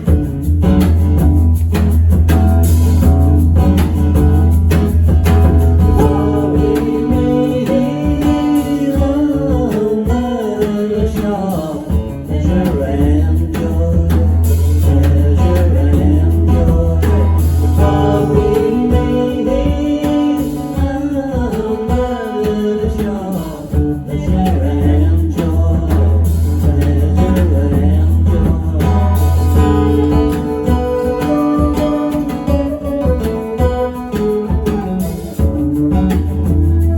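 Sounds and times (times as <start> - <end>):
steady low bass: 0.0 - 7.6, 24.0 - 30.2
guitar: 0.0 - 36.9
person singing: 5.2 - 35.5.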